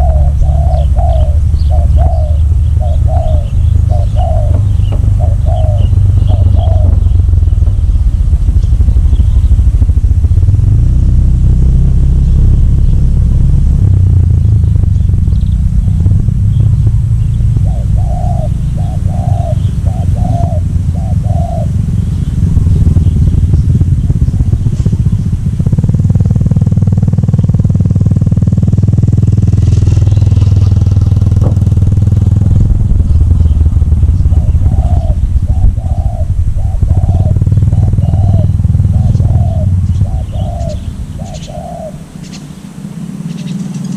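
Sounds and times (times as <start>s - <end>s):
dove cooing: 0.0s - 7.6s, 15.1s - 25.2s, 30.0s - 43.9s
low engine rumble: 0.0s - 43.9s.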